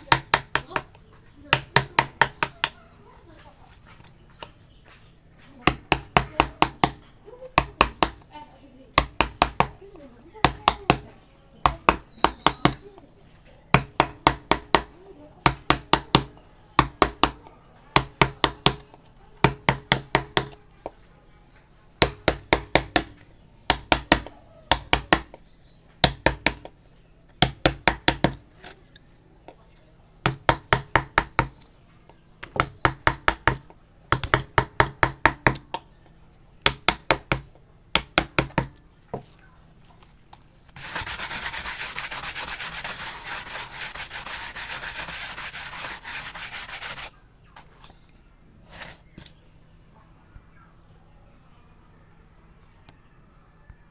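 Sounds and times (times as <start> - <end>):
hammer tapping chisel into wood: 0.0 - 2.8, 5.6 - 8.3, 9.0 - 9.8, 10.4 - 13.0, 13.7 - 21.0, 22.0 - 25.4, 26.0 - 26.7, 27.4 - 28.5, 30.2 - 31.7, 32.4 - 35.9, 36.6 - 39.3
rubbing strokes on wood: 40.7 - 47.1.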